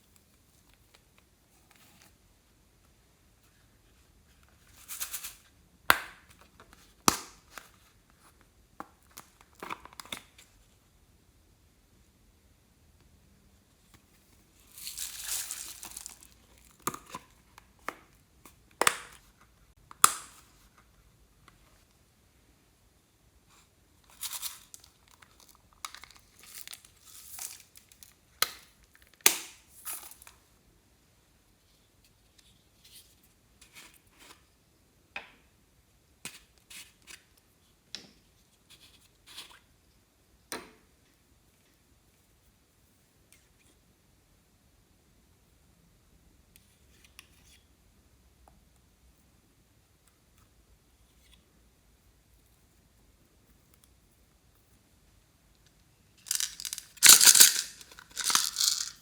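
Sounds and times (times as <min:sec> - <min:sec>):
crinkling tearing rustle: 0:14.7 - 0:16.7, 0:56.3 - 0:59.0.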